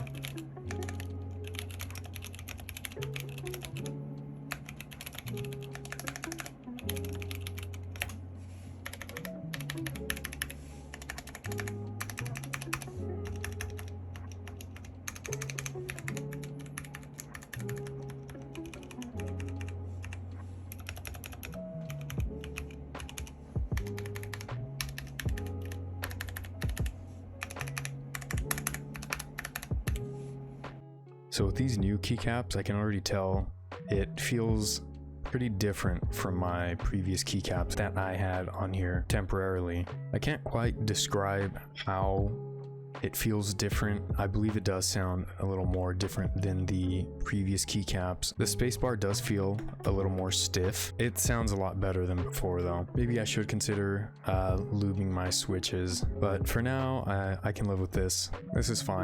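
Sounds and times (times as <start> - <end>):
lo-fi beat with bass line: 21.0 - 27.0, 27.6 - 30.1, 33.3 - 36.3, 38.9 - 42.4, 51.2 - 51.6, 52.2 - 57.0.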